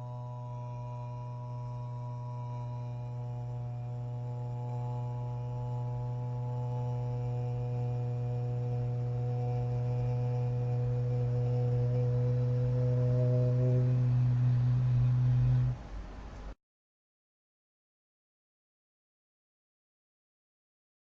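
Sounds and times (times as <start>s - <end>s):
person toning a low drone: 0.0s - 15.8s.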